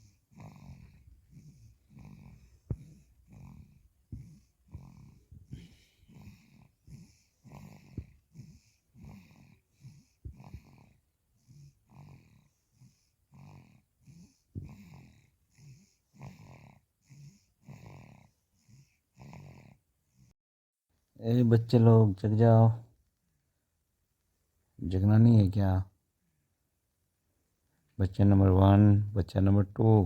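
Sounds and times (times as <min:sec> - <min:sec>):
faint snoring: 0:00.0 - 0:20.3.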